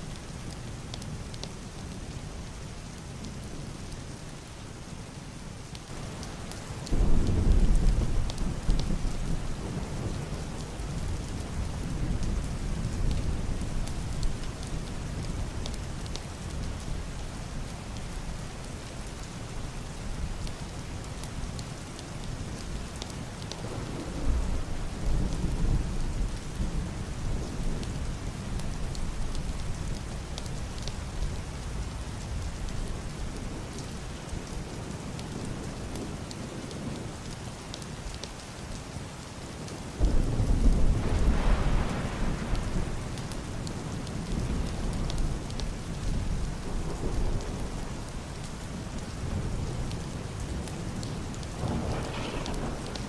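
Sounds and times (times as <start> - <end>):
heavy rain on a roof and window: 0.0 - 53.0
thunder rumbling: 6.9 - 15.3, 40.0 - 53.0
thunder crack: 40.0 - 43.1, 51.6 - 53.0.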